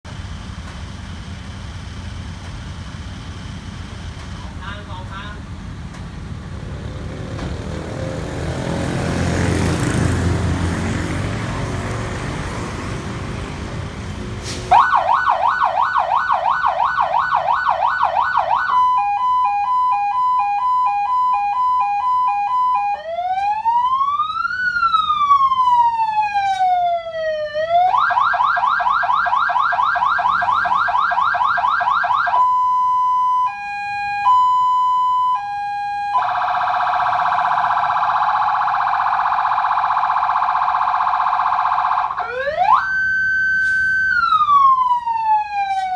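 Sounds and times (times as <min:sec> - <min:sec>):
electronic vehicle siren: 0:14.7 - 0:45.9.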